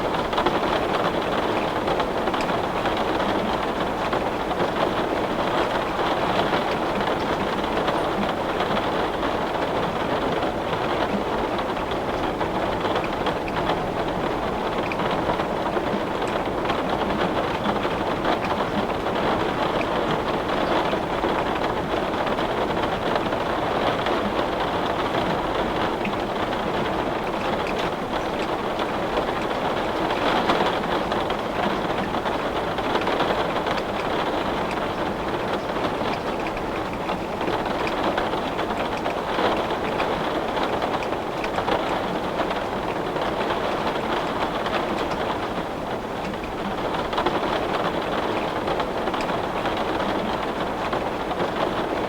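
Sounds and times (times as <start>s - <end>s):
heavy rain on a window: 0.0s - 52.0s.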